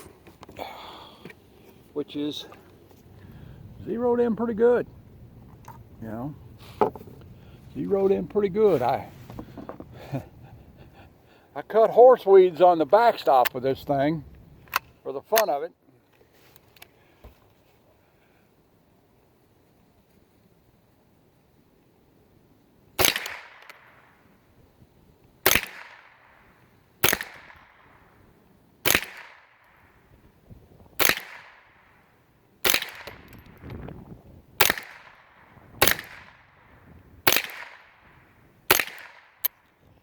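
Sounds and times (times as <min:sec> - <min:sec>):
rifle shots with echo: 0:23.0 - 0:24.2, 0:25.4 - 0:28.2, 0:28.8 - 0:30.0, 0:31.0 - 0:32.0, 0:32.6 - 0:33.6, 0:34.6 - 0:39.6.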